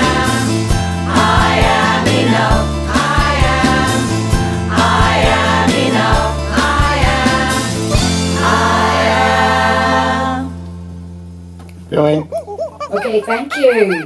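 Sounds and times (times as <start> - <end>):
choir singing: 0.0 - 10.8
band with bass and percussion: 0.0 - 12.3.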